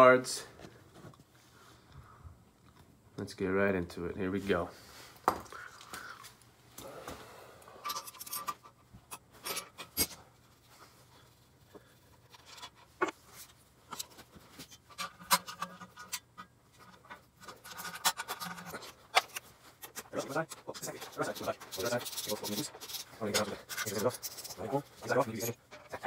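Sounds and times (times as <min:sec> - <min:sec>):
metal tools clicking and scraping: 0:07.8 - 0:10.2, 0:13.9 - 0:26.0.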